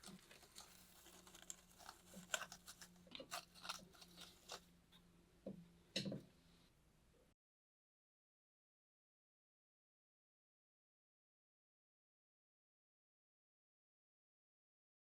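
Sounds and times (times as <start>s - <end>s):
hands rustling plant and soil: 0.0s - 4.7s.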